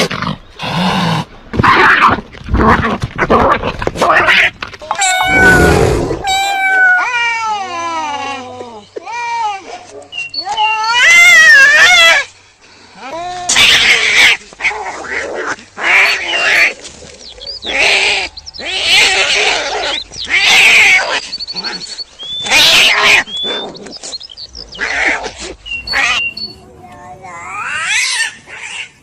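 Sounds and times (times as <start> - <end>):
cat harsh rasping cries: 4.1 - 7.3, 13.5 - 16.7
cat meowing: 4.9 - 7.3.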